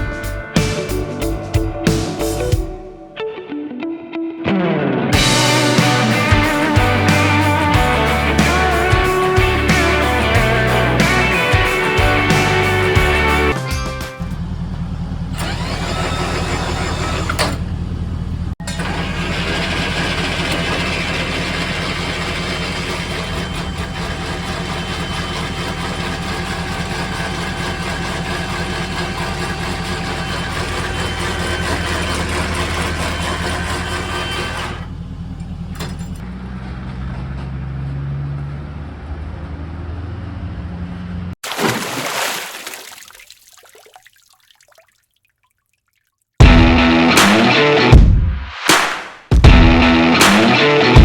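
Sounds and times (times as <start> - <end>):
pressure washer engine running: 5.2 - 13.6, 14.4 - 34.9.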